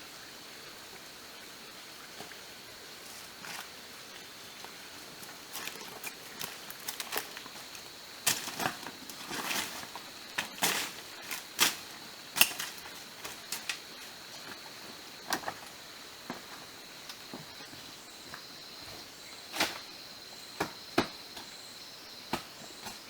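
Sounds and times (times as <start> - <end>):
wood cracking and snapping: 5.2 - 11.8, 12.4 - 13.8.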